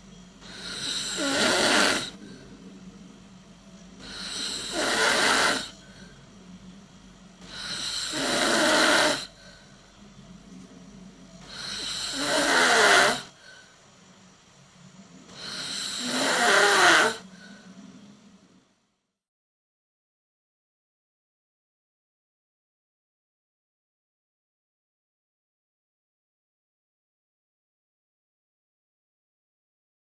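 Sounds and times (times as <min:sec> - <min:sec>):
quiet breathing: 0:00.0 - 0:19.0
person snoring: 0:00.4 - 0:02.5, 0:04.0 - 0:06.2, 0:07.4 - 0:09.7, 0:11.4 - 0:13.7, 0:15.3 - 0:17.8.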